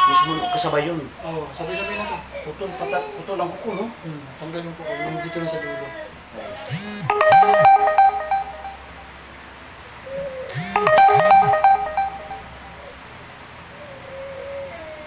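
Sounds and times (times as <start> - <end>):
phone ringtone chime jingle: 7.1 - 9.0, 10.6 - 12.7.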